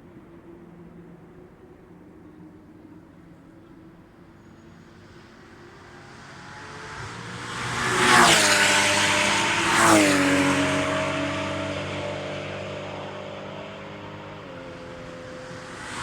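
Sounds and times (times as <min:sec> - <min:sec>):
race cars passing: 0:04.5 - 0:16.0.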